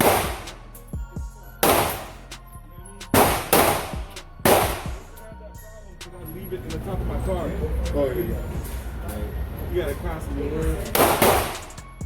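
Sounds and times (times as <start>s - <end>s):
gunshots with echo: 0.0s - 0.6s, 1.6s - 2.2s, 3.1s - 5.0s, 10.9s - 11.7s.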